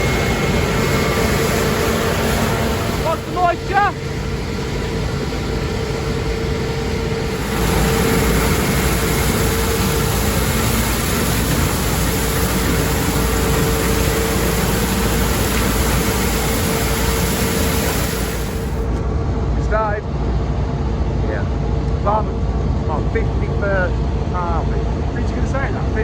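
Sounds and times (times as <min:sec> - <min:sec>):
farm machinery running: 0:00.0 - 0:19.0
constant mechanical whine: 0:00.0 - 0:26.0.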